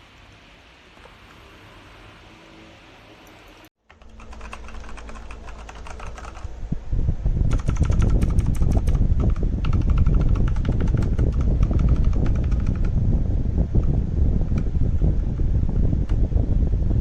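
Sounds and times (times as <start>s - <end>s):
keyboard keys clacking: 3.9s - 6.6s, 7.5s - 12.9s
loud low rumble: 4.6s - 17.0s.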